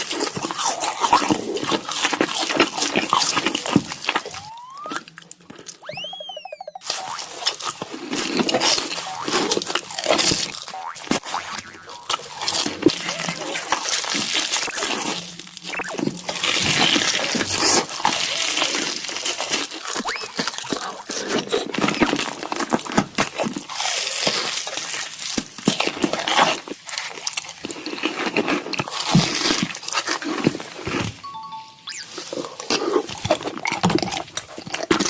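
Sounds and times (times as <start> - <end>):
person crunching and chewing: 0.0 - 5.8, 6.8 - 31.2, 32.1 - 35.0
wet mouth sounds: 0.1 - 25.0.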